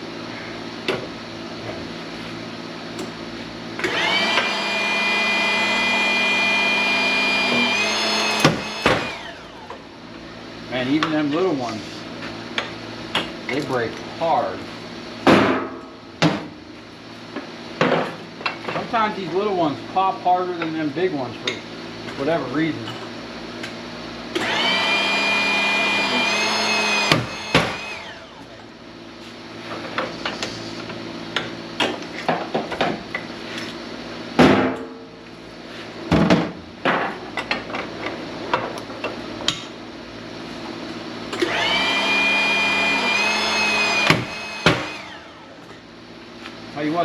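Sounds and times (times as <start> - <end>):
hydraulic pump whining: 3.8 - 9.9, 24.3 - 28.8, 41.3 - 45.9.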